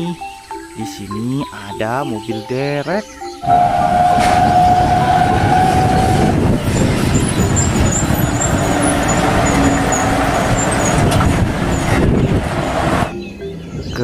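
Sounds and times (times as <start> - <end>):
heavy truck engine running: 3.4 - 14.0
whining tone: 3.4 - 14.0.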